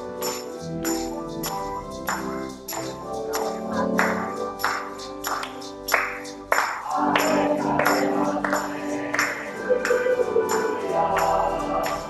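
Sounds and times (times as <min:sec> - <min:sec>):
instrumental accompaniment: 0:00.0 - 0:12.0
tambourine beat: 0:00.0 - 0:12.0
voices singing a hymn: 0:06.8 - 0:12.0.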